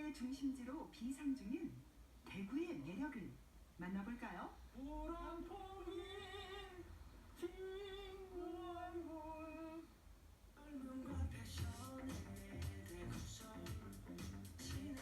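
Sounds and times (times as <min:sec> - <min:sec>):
person singing with vibrato: 0:04.8 - 0:09.9, 0:10.6 - 0:15.0
music with low beat: 0:11.2 - 0:15.0.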